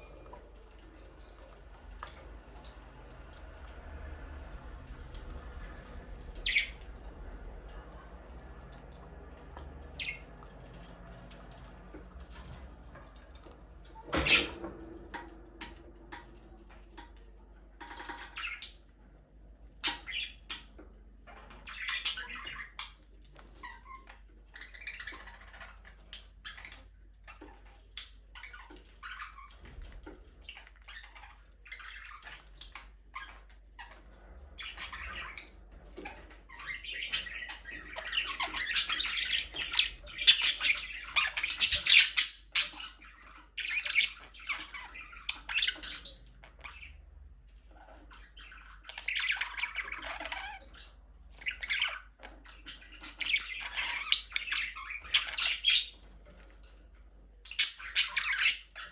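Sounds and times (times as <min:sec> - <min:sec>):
budgerigars chirping and squawking: 0:00.0 - 0:58.9.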